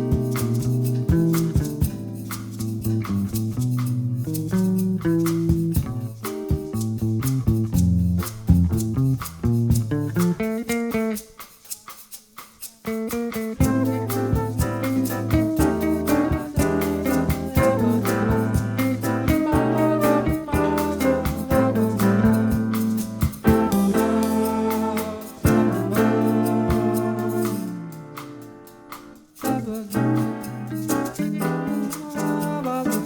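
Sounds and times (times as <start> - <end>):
walking bass: 0.0 - 11.1, 13.6 - 28.6
light drum kit: 0.0 - 33.0.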